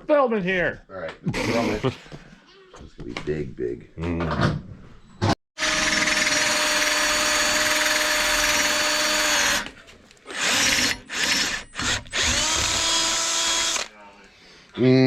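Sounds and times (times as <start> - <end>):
electric drill boring: 5.6 - 9.7, 10.3 - 13.9.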